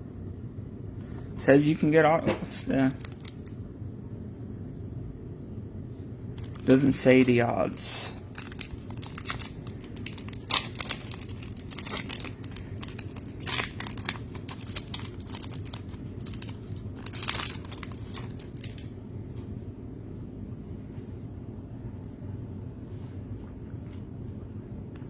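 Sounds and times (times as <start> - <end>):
packaging crinkling: 2.7 - 3.6, 6.4 - 19.0
packaging ripping: 2.9 - 3.5, 6.4 - 18.9.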